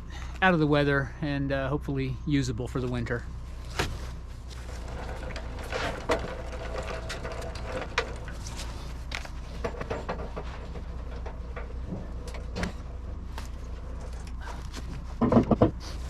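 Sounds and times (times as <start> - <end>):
metal clanks and knocks: 4.6 - 15.8.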